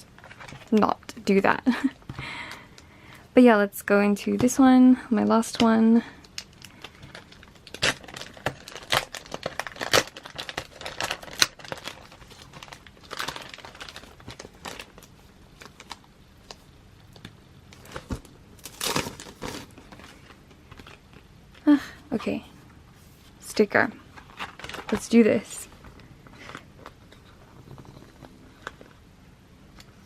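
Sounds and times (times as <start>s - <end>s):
plastic wrapping crinkling: 6.2s - 21.8s, 24.0s - 27.3s
plastic tearing rustles: 6.3s - 21.7s, 24.1s - 27.2s.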